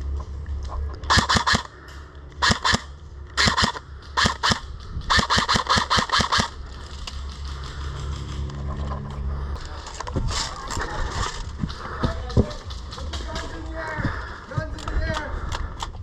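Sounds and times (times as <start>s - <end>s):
airsoft rifle firing bursts: 1.1s - 1.7s, 2.4s - 6.6s.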